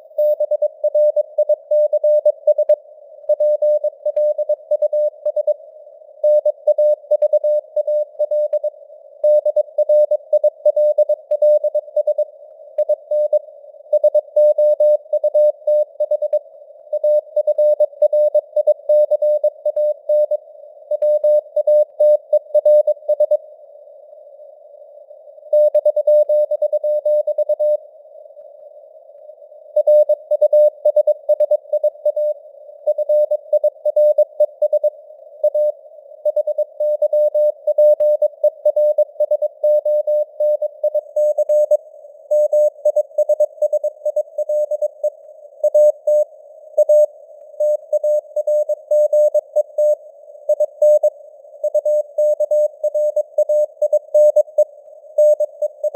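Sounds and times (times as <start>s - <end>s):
faint radio noise hiss: 23.4s - 25.5s, 27.7s - 33.5s.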